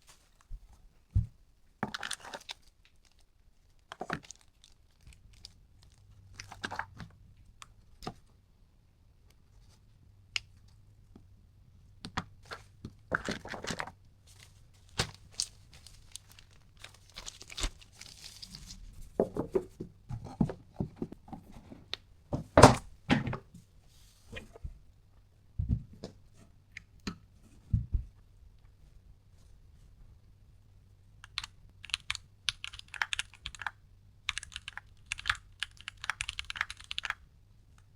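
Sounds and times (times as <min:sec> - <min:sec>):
packaging crinkling and tearing: 0:01.9 - 0:06.9, 0:13.1 - 0:18.9
scattered clicks: 0:31.2 - 0:37.2.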